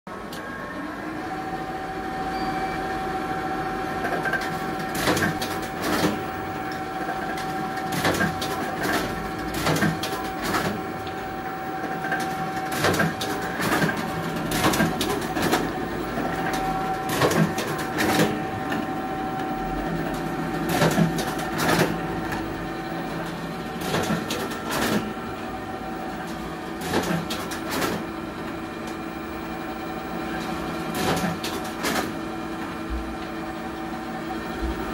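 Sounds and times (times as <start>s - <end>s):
stitching machine motor hum: 0.1s - 34.9s
stitching machine sharp clacks: 4.0s - 11.2s, 11.9s - 18.7s, 20.6s - 22.4s, 23.7s - 25.2s, 26.8s - 28.1s, 30.9s - 32.2s.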